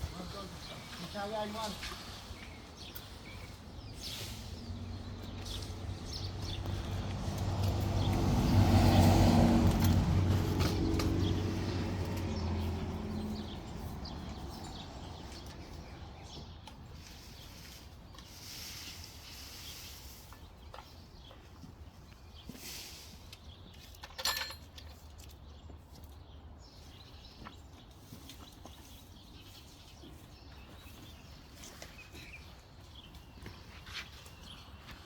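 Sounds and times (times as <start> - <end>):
motor vehicle passing by: 3.9 - 16.3.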